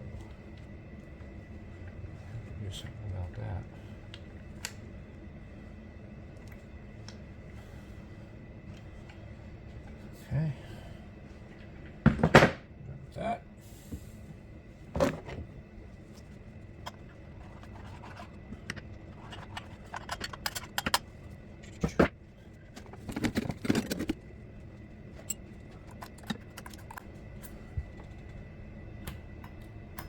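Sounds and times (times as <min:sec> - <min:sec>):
tools clicking and scraping: 0:16.8 - 0:22.1, 0:22.7 - 0:24.2, 0:25.2 - 0:27.6.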